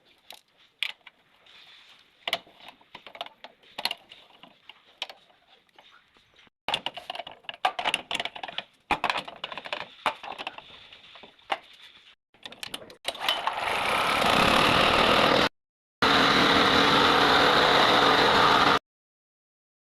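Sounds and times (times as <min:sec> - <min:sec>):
clicking and clattering of parts: 0:00.1 - 0:01.2, 0:02.2 - 0:05.9, 0:06.7 - 0:11.8, 0:12.4 - 0:13.4
generator engine running: 0:13.8 - 0:18.8.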